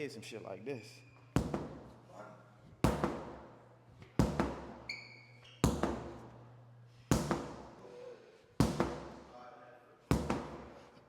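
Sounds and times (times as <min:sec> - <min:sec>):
short high squeak: 0:04.9 - 0:05.6
sledgehammer strikes: 0:05.6 - 0:06.2, 0:07.1 - 0:07.7, 0:10.1 - 0:10.8.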